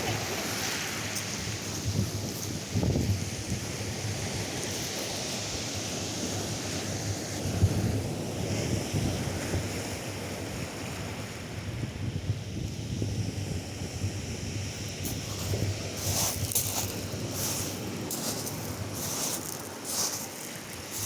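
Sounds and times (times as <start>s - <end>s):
wind buffeting microphone: 0.0s - 4.5s
surf washing onto beach: 0.0s - 11.8s, 13.5s - 21.0s.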